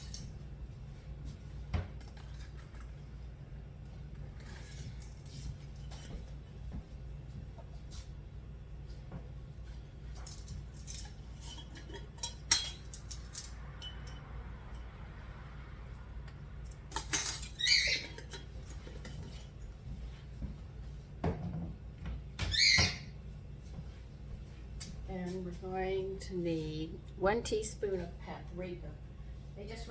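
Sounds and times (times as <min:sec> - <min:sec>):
steady low hum: 0:00.0 - 0:29.9
metal spoons clinking: 0:10.3 - 0:14.2
high squeak: 0:17.5 - 0:18.3.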